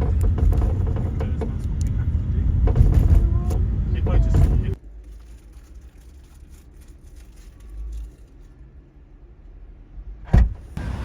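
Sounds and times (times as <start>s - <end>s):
car rumble from inside cabin: 0.0s - 4.8s.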